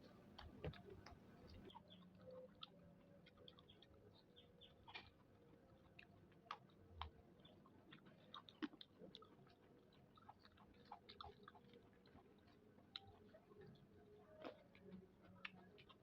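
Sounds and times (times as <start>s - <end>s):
person chewing: 8.0s - 13.0s.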